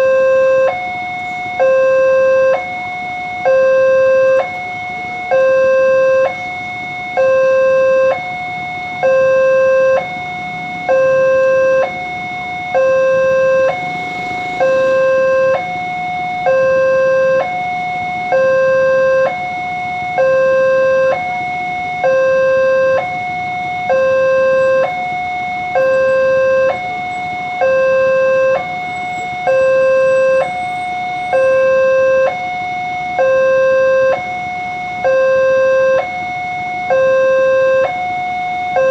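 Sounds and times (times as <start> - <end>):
two-tone crossing alarm: 0.0 - 38.9.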